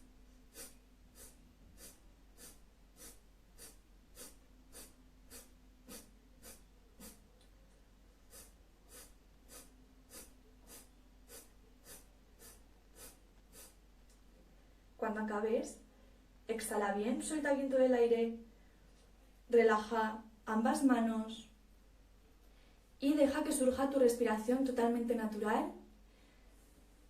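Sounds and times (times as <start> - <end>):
woman's forceful nasal exhalations: 0.4 - 7.4, 8.2 - 13.8.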